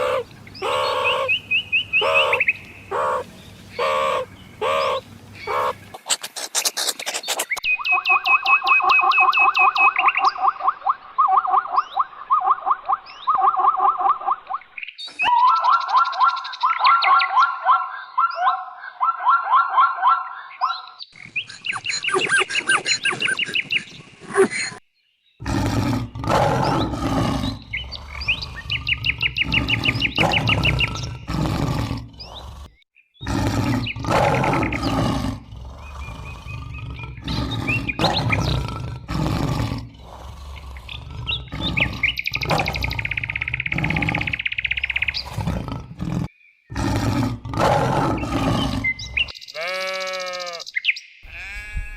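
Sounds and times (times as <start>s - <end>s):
bird chirps: 0.0s - 25.5s, 26.6s - 31.3s, 35.8s - 38.7s, 40.5s - 45.5s, 48.0s - 51.3s.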